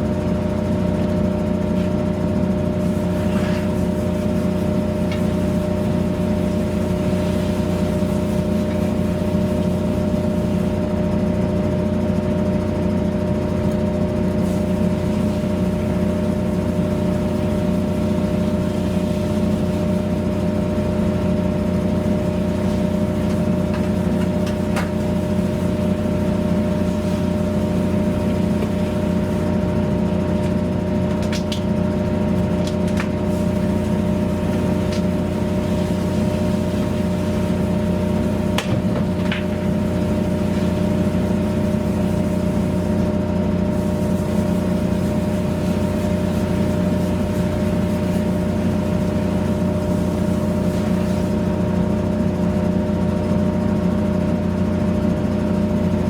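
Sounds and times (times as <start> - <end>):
motor humming: 14.4 - 51.9.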